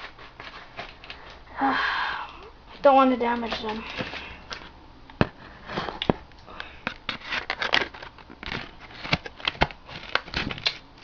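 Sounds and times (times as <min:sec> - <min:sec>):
packaging being cut open: 0:07.2 - 0:10.8.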